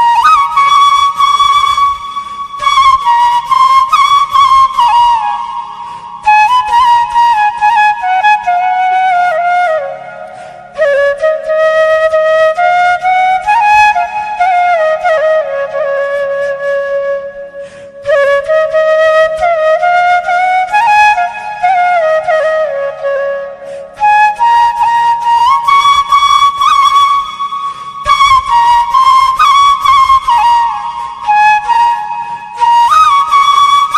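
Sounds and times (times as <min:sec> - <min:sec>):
bamboo flute melody: 0:00.0 - 0:33.9
flute player breaths: 0:05.7 - 0:06.2, 0:10.2 - 0:10.8, 0:17.4 - 0:18.1, 0:23.5 - 0:24.0, 0:27.6 - 0:28.1.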